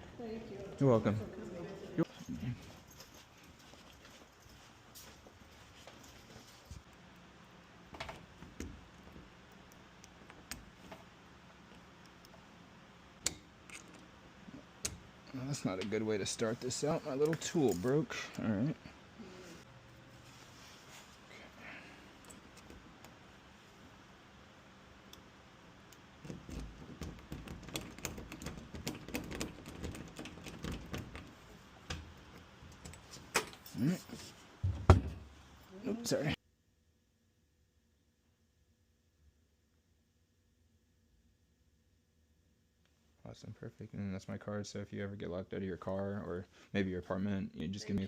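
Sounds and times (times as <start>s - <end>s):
lock-picking tools clicking in lock: 26.2s - 31.3s.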